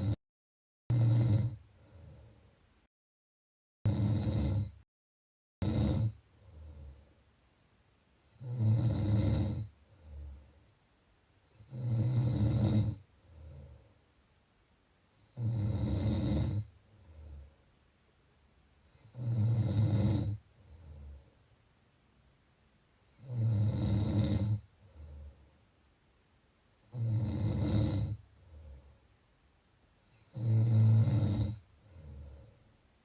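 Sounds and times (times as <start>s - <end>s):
person snoring: 0.0s - 0.2s, 0.9s - 2.4s, 3.9s - 4.8s, 5.6s - 7.1s, 8.4s - 10.4s, 11.6s - 13.8s, 15.3s - 17.5s, 19.0s - 21.2s, 23.2s - 25.4s, 26.8s - 28.8s, 30.2s - 32.5s
faint breath: 1.6s - 2.8s, 6.3s - 7.4s, 9.7s - 10.8s, 13.2s - 14.2s, 16.8s - 17.8s, 20.5s - 21.6s, 24.7s - 25.8s, 28.3s - 29.2s, 31.8s - 32.9s.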